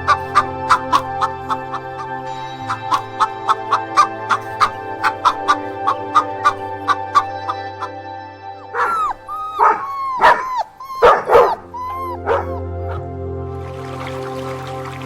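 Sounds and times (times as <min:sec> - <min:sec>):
dog barking: 0:00.0 - 0:01.9, 0:08.7 - 0:13.0
background music: 0:00.0 - 0:15.0.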